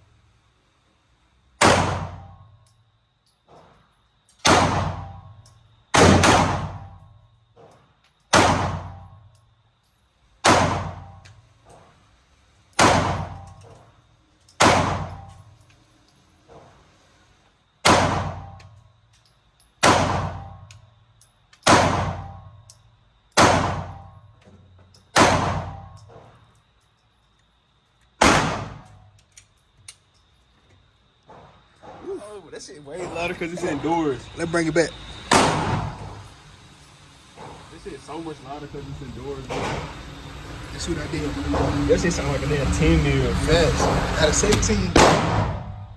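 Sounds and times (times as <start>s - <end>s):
handgun shots echoing: 1.6s - 2.4s, 4.4s - 5.2s, 6.0s - 7.0s, 8.3s - 9.0s, 10.4s - 11.1s, 12.8s - 13.6s, 14.6s - 15.3s, 17.8s - 18.6s, 19.8s - 20.5s, 21.6s - 22.4s, 23.4s - 24.0s, 25.2s - 25.9s, 28.2s - 28.8s, 45.0s - 45.6s
faint high whine: 28.8s - 45.9s.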